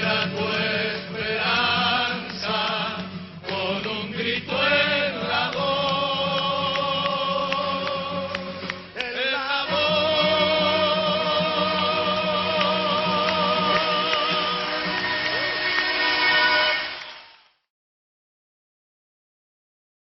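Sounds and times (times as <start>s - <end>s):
voices singing held notes: 0.0s - 17.0s
low musical accompaniment: 9.6s - 17.2s.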